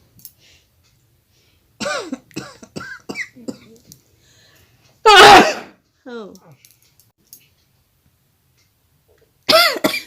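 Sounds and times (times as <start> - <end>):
woman sneezing: 5.1 - 5.8.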